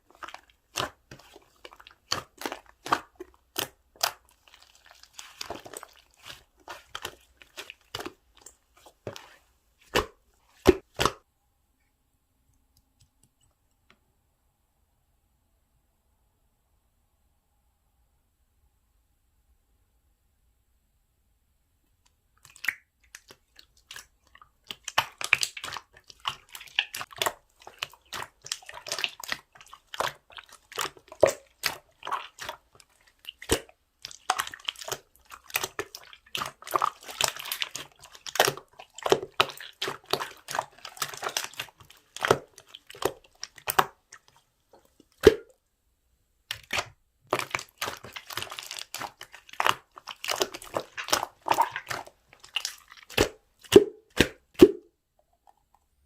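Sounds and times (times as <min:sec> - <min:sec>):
slime squished by hand: 0:00.0 - 0:11.2, 0:22.4 - 0:45.6, 0:46.5 - 0:54.9.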